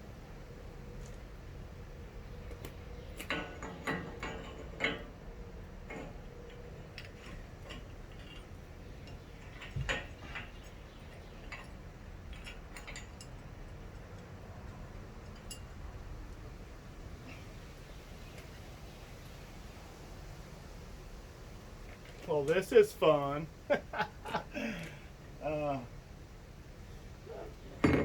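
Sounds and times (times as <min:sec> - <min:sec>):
metal bolts and plates clinking: 0:02.3 - 0:16.1, 0:27.6 - 0:28.0
metal knocks: 0:27.6 - 0:28.0.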